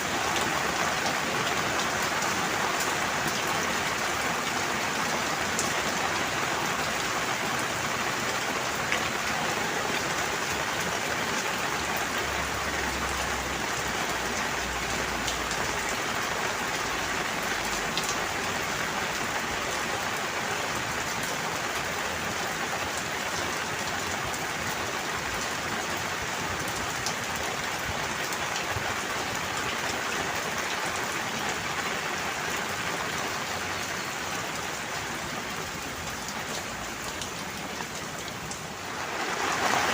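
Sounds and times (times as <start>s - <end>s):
steady rain falling: 0.0s - 39.9s.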